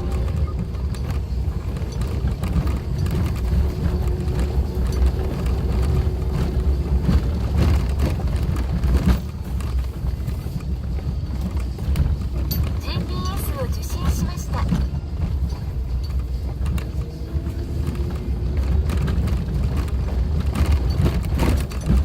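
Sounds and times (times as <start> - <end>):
vehicle engine and road drone: 0.0 - 22.0
vehicle knocks and rattles: 0.0 - 22.0.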